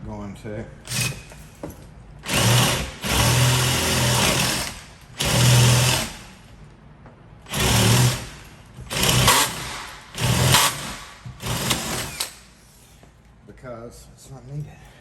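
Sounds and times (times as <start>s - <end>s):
power drill running: 2.2s - 6.3s, 7.5s - 12.4s.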